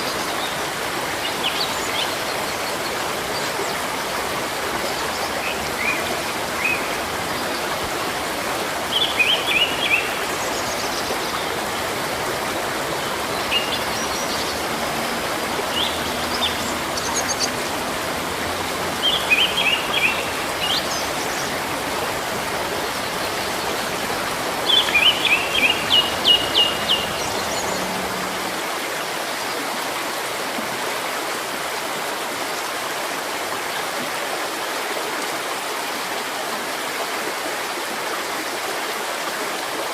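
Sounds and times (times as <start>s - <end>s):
stream water rushing: 0.0s - 39.9s
small birds chirping: 13.0s - 28.6s.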